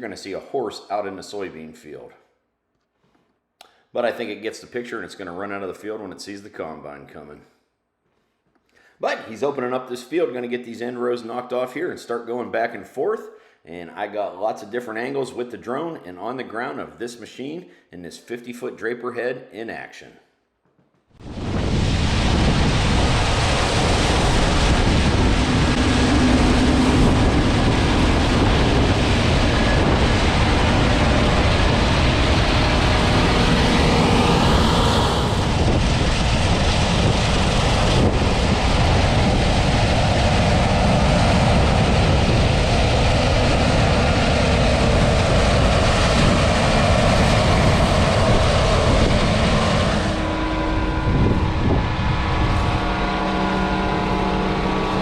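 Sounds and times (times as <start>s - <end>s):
wind buffeting microphone: 21.2s - 55.0s
combine harvester running: 22.2s - 55.0s.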